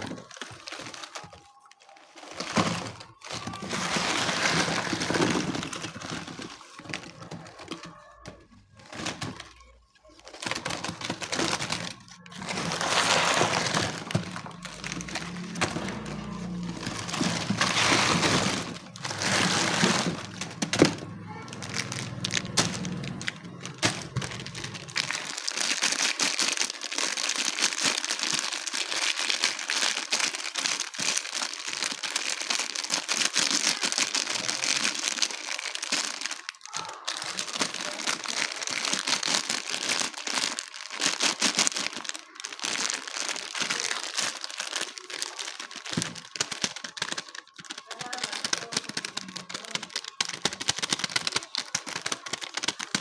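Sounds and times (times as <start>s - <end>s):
slime crackling and popping: 10.9s - 19.8s, 20.8s - 53.0s.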